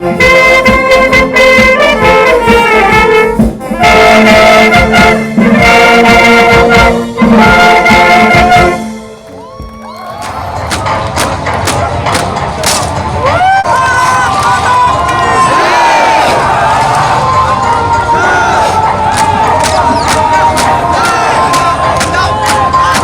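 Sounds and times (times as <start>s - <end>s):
brass band playing a march: 0.0s - 9.2s, 15.2s - 23.0s
trumpets and trombones: 0.0s - 9.4s, 10.1s - 23.0s
steady drum beats: 0.0s - 23.0s.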